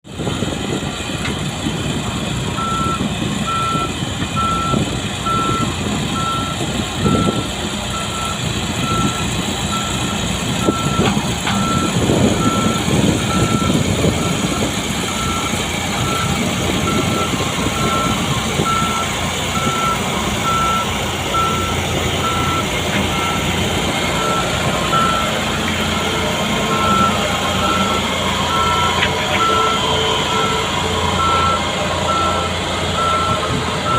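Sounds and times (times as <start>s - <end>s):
skid steer engine rumbling: 0.0s - 33.9s
backup alarm beeping: 2.6s - 33.9s.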